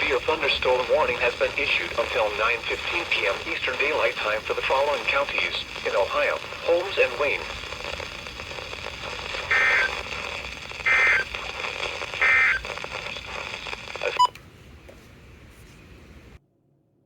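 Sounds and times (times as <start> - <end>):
radio hiss: 0.0 - 16.4
data tone bursts: 9.3 - 10.2, 10.8 - 12.8.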